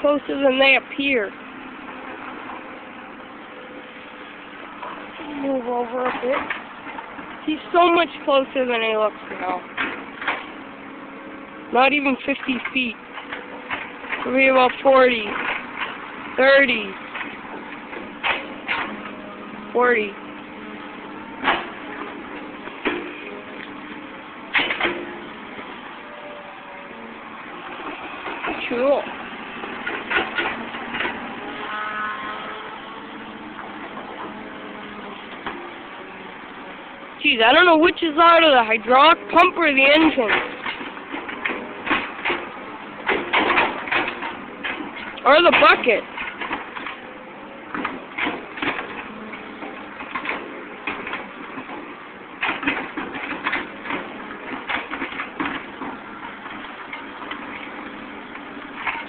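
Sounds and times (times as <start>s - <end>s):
excavator diesel engine running: 0.0s - 59.0s
metal clangs from bucket linkage: 17.2s - 19.2s, 21.4s - 22.1s, 24.5s - 25.2s, 29.8s - 31.2s, 39.4s - 47.0s.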